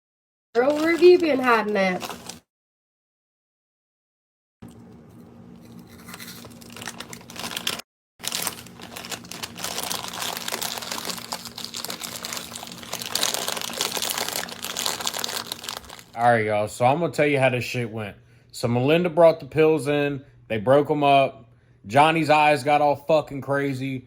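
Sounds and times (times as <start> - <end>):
plastic snack bag crinkling: 0.6 - 2.4, 5.6 - 16.2.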